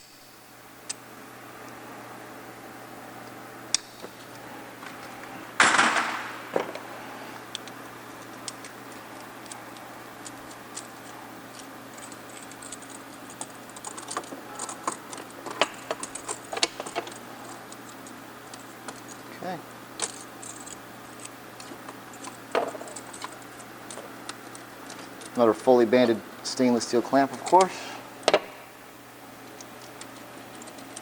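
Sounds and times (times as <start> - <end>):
tools and metal parts clattering: 4.9 - 6.8, 7.6 - 19.4, 20.0 - 26.2.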